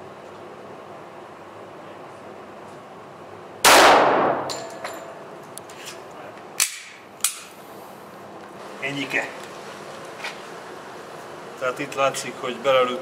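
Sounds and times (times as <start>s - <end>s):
pistol shot echoing: 3.6s - 4.7s.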